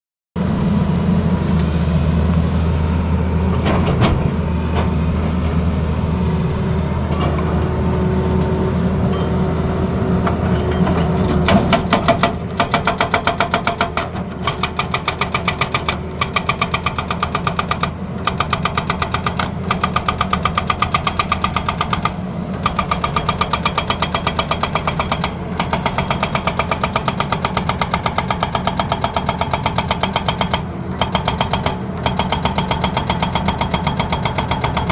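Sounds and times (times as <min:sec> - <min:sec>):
excavator diesel engine running: 0:00.4 - 0:34.9
hydraulic breaker hammering: 0:10.7 - 0:34.9.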